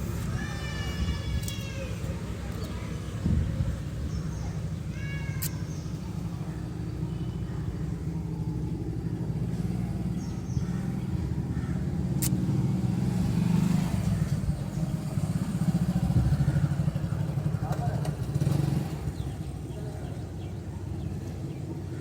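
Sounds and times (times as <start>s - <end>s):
car engine running: 1.8s - 22.0s
sharp clicks: 5.4s - 5.7s, 12.2s - 12.5s.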